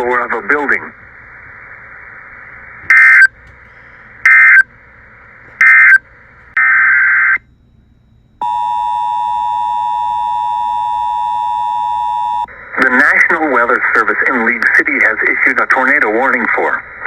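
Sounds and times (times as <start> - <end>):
two-tone attention signal: 8.4 - 12.5.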